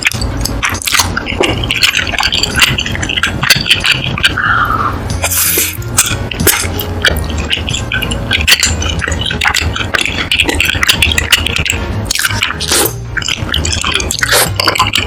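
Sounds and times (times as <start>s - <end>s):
wet chewing and smacking: 0.0s - 15.0s
short slurp: 4.3s - 6.7s, 12.2s - 14.6s.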